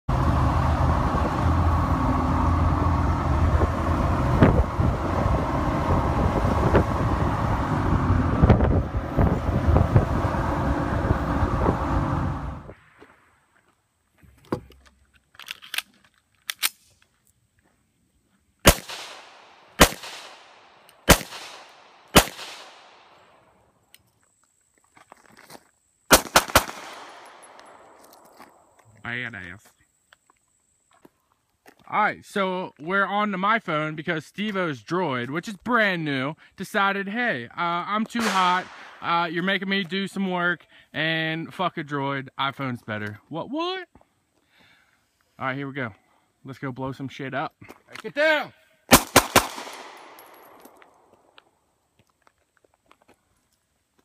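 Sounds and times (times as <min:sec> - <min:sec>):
pistol shots: 0:18.6 - 0:23.2, 0:26.1 - 0:28.0, 0:38.2 - 0:39.1, 0:48.9 - 0:50.8.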